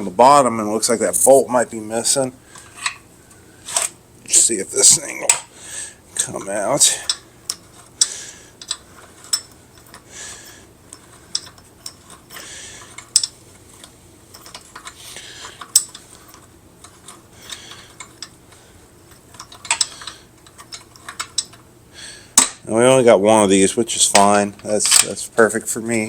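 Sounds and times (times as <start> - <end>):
metal parts clinking and scraping: 2.5 - 4.0, 6.2 - 21.7, 24.1 - 25.2.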